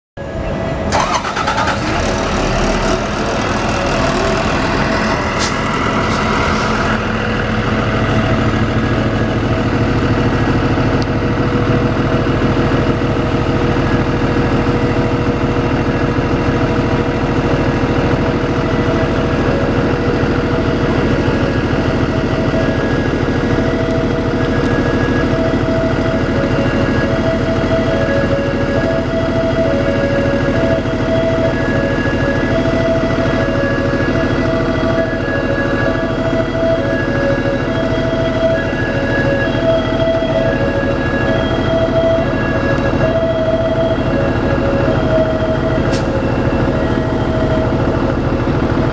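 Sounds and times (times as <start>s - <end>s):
high warbling squeal: 0.2s - 9.7s
diesel engine idling: 0.2s - 48.9s.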